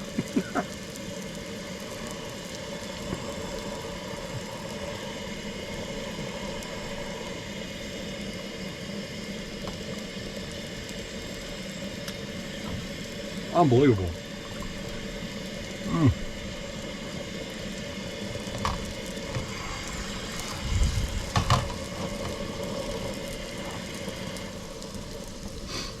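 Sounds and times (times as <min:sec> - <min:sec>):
faint ticks: 0:09.4 - 0:13.2.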